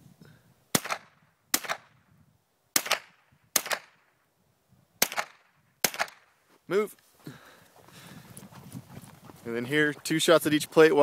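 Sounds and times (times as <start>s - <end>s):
rifle shots: 0.7s - 1.9s, 2.8s - 4.0s, 5.0s - 6.3s.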